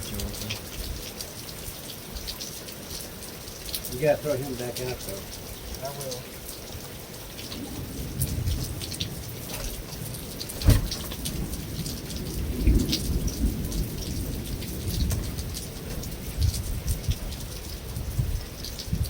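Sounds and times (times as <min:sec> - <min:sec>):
heavy rain on a metal roof: 0:00.0 - 0:19.0
low rumbles: 0:07.6 - 0:14.3
sharp loud knock: 0:10.6 - 0:11.2.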